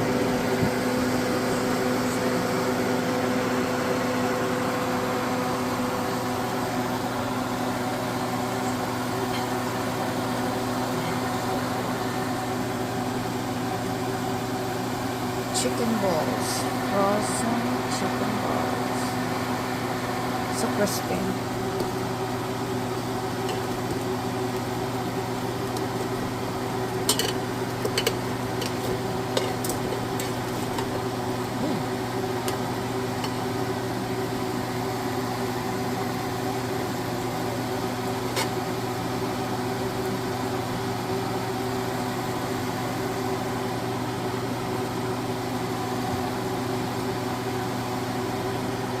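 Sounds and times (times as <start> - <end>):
air fryer fan hum: 0.0 - 49.0.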